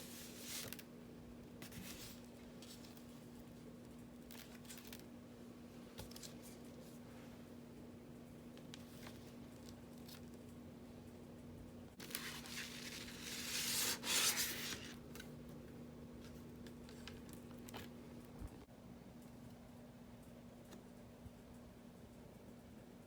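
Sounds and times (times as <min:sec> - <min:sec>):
paper sleeves rustling: 0:00.0 - 0:00.8, 0:12.0 - 0:15.0.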